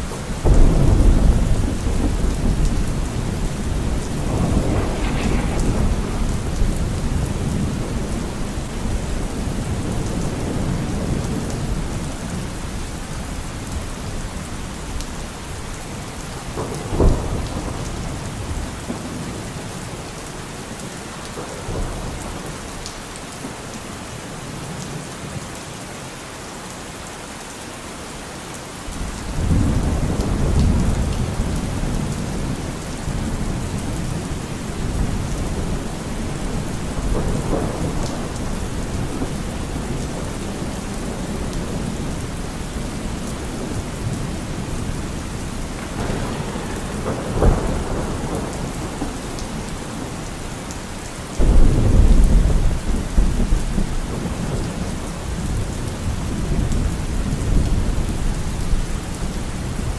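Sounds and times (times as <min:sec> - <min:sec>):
thunder rumble: 0:00.0 - 0:20.0, 0:29.0 - 0:59.9
steady rain: 0:00.0 - 0:59.9
sharp thunder crack: 0:00.4 - 0:11.2, 0:45.6 - 0:50.2, 0:51.4 - 0:54.5.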